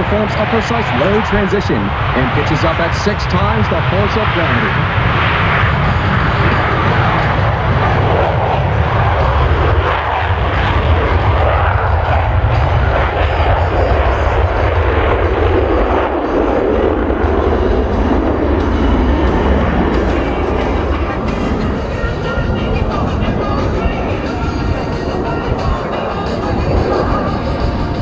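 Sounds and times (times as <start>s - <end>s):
jets roaring overhead: 0.0s - 28.0s.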